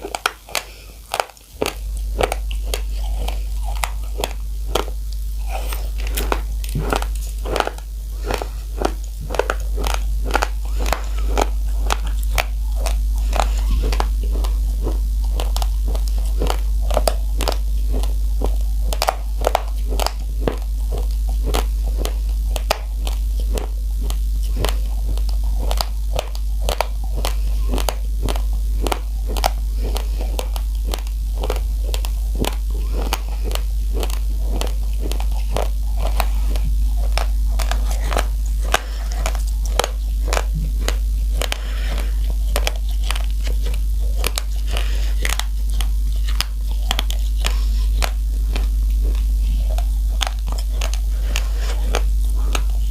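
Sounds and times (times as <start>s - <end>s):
chewing raw rice: 0.0s - 52.9s
low hum: 0.0s - 52.9s.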